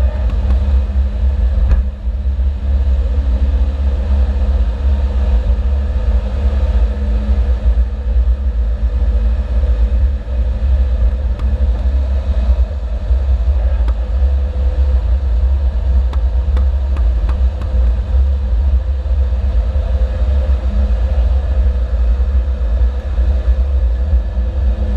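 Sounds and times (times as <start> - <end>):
car engine and road rumble: 0.0 - 24.9.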